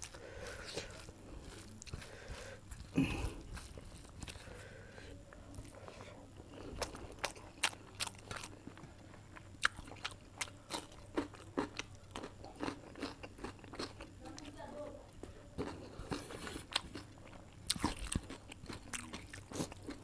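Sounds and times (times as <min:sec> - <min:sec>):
chewing and biting food: 0:00.0 - 0:04.6, 0:05.5 - 0:14.1, 0:15.5 - 0:20.0.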